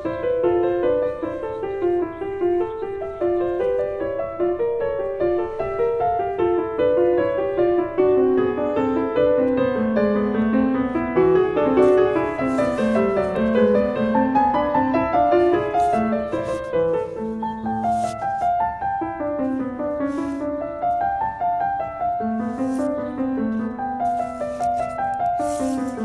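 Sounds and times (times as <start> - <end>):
gentle piano melody: 0.0 - 26.0.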